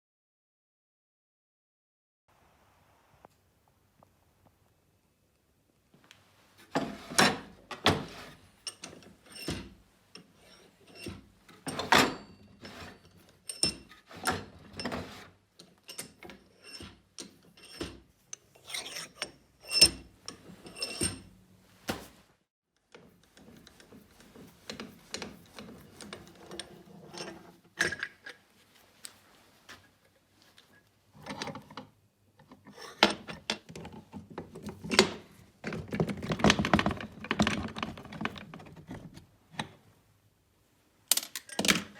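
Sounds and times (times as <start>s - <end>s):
metal parts clanking and scraping: 6.7s - 21.3s, 23.3s - 28.4s.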